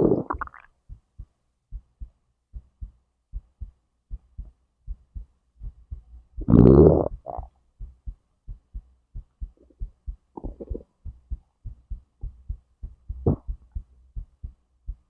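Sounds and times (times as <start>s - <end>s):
stomach gurgles: 0.0s - 0.7s, 6.4s - 7.5s, 10.4s - 10.9s, 13.2s - 13.5s
heartbeat thumps: 0.0s - 15.0s.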